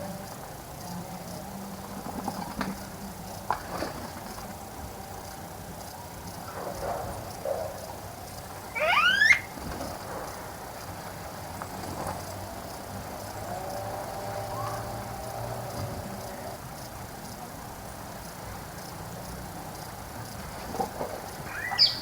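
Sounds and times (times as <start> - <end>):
bird call rising in pitch: 8.7 - 9.6, 21.5 - 22.0.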